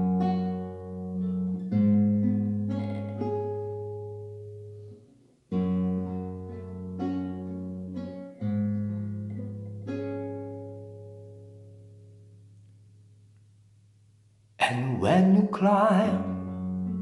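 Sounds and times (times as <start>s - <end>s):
acoustic guitar strumming chords: 0.0s - 13.2s, 14.6s - 17.0s.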